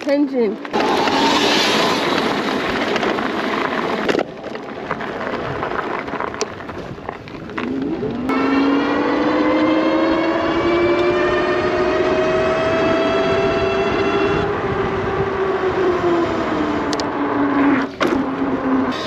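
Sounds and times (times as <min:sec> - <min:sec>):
tyre and road noise: 0:00.0 - 0:19.0
wind rushing: 0:07.9 - 0:17.9
electric motor whining: 0:08.3 - 0:19.0.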